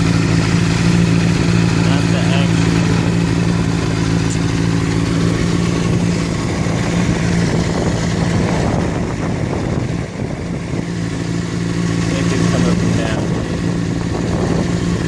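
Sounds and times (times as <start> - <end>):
engine clicking noise: 0.0 - 15.0
motorcycle engine idling: 0.0 - 15.0.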